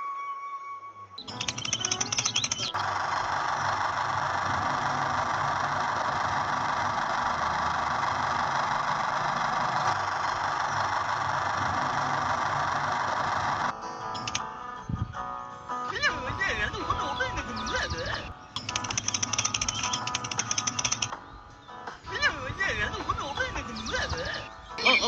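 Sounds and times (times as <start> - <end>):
small electric motor whirring: 1.3 - 14.4.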